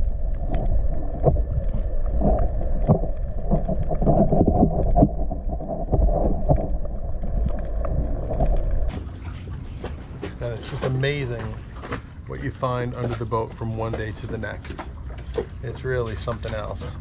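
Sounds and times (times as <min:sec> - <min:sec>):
muffled underwater rumble: 0:00.0 - 0:17.0
small knocks and clicks: 0:10.2 - 0:17.0.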